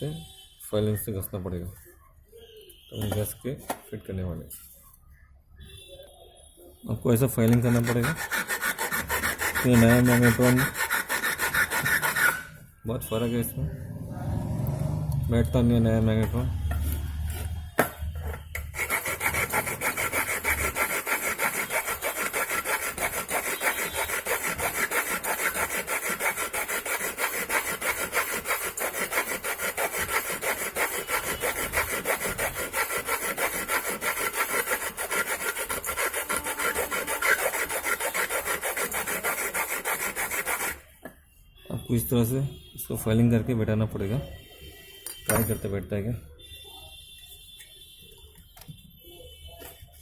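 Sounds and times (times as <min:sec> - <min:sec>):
hand file rasping on metal: 0:07.5 - 0:12.5, 0:18.6 - 0:40.9.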